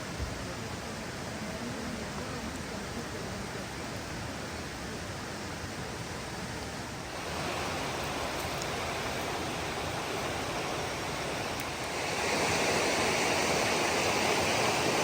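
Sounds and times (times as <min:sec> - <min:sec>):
waterfall rushing: 0:07.0 - 0:15.0.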